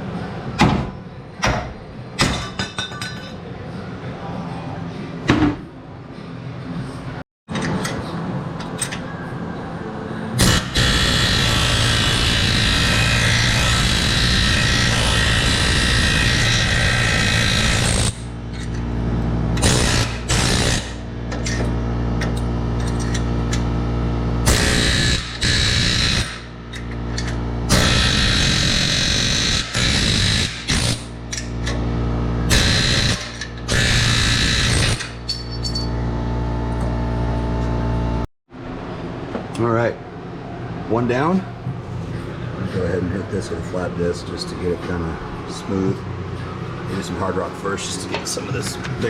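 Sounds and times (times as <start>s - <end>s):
power tool grinding steel: 10.4s - 18.3s, 19.6s - 21.0s, 24.5s - 26.4s, 27.7s - 31.1s, 32.5s - 35.2s.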